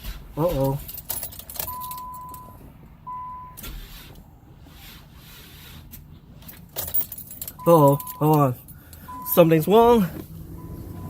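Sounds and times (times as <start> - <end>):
short electronic beeps: 1.7 - 3.6, 9.1 - 9.4.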